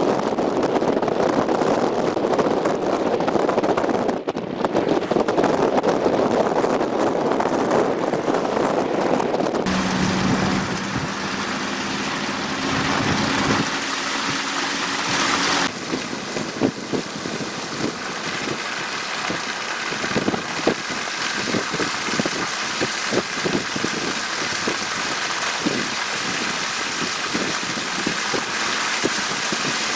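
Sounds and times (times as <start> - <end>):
blizzard wind rushing: 9.7 - 15.7
steady low hum: 9.7 - 15.7
snow and sand pelting: 9.7 - 15.8.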